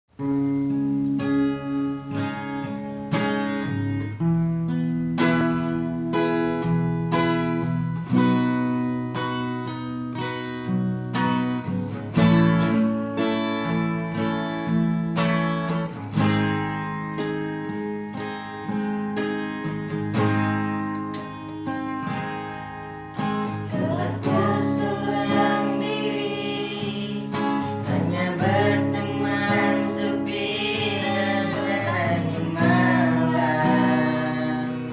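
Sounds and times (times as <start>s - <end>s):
acoustic guitar strumming: 0.1s - 34.9s
person singing: 23.6s - 34.9s.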